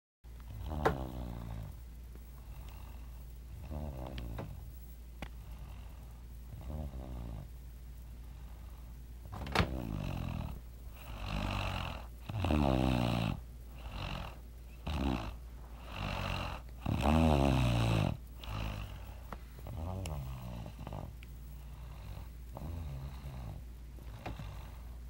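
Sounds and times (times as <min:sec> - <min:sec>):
person snoring loudly: 0:00.5 - 0:01.8, 0:02.4 - 0:04.6, 0:05.4 - 0:07.5, 0:09.6 - 0:25.0.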